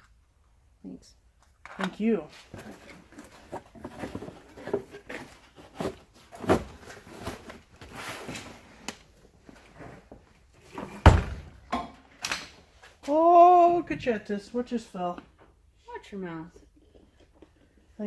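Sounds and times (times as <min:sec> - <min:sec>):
loud thud of object dropping: 0:11.0 - 0:11.8.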